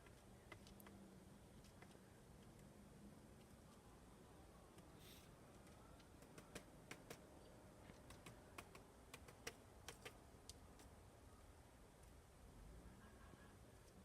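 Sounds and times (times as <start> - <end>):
woodpecker pecking at wood: 0.0 - 2.6, 5.5 - 7.3, 7.9 - 10.9.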